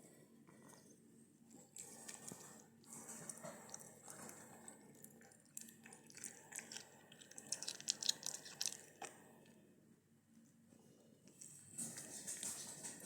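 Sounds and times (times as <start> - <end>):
cat chewing wet smacking: 1.8 - 9.4.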